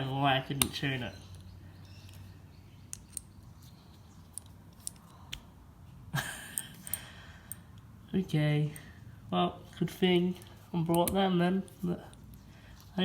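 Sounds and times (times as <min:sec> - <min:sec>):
small metal parts clicking: 0:00.6 - 0:05.4.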